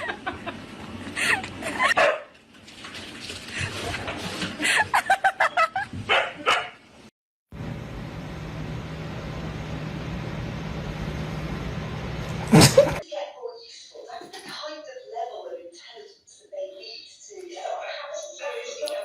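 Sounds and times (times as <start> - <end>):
dog barking: 2.0 - 2.3, 6.1 - 6.8
steady low hum: 7.5 - 13.0.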